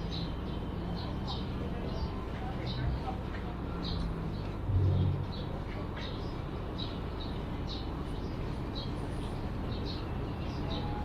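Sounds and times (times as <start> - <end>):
small birds chirping: 0.0 - 11.0
low rumble of station: 0.8 - 7.2
low hum: 4.6 - 5.6.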